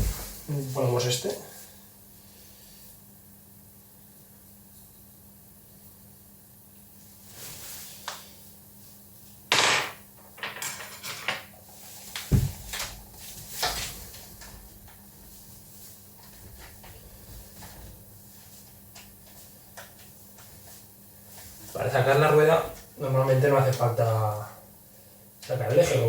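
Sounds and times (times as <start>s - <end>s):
deep thump: 12.3s - 12.6s.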